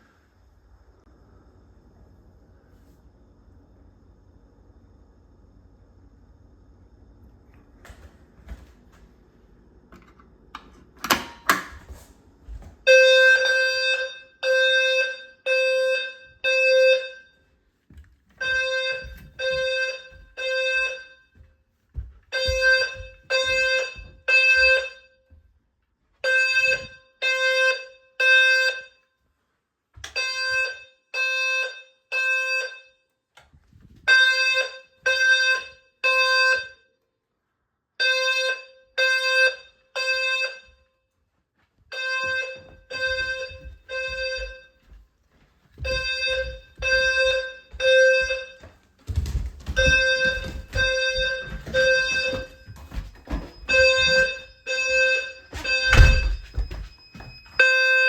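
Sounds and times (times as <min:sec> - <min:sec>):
low buzzy fire alarm beeps: 0:11.0 - 0:11.8, 0:12.8 - 0:17.8, 0:18.4 - 0:25.6, 0:26.2 - 0:29.3, 0:30.0 - 0:33.4, 0:34.0 - 0:37.2, 0:37.9 - 0:41.1, 0:41.8 - 0:58.0.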